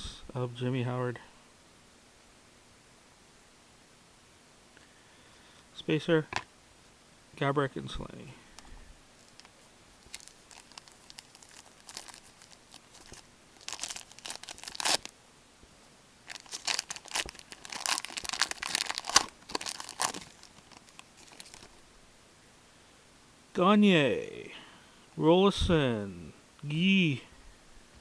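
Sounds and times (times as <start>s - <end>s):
wrapper crinkling and tearing: 9.2s - 15.1s, 16.2s - 21.8s.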